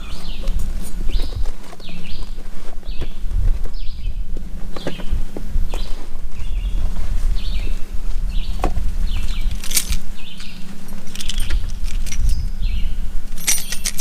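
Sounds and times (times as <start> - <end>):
birds chirping: 0.0 - 14.0
faint hum: 0.0 - 14.0
low rumble: 0.0 - 14.0
items rummaged in a bag: 9.1 - 12.4, 13.3 - 14.0.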